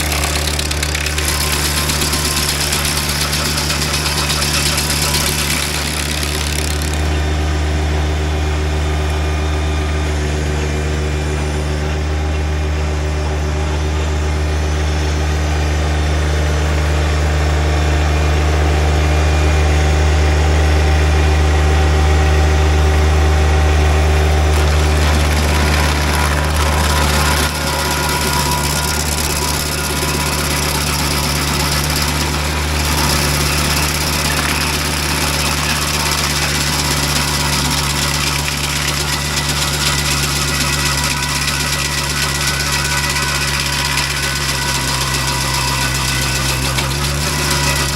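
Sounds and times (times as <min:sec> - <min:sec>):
stump grinder hissing: 0:00.0 - 0:11.7, 0:23.8 - 0:47.9
tractor engine running: 0:00.0 - 0:47.9.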